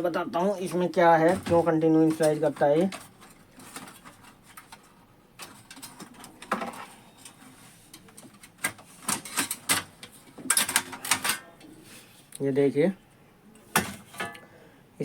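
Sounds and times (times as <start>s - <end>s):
hands handling plastic printer parts: 0.6s - 11.7s.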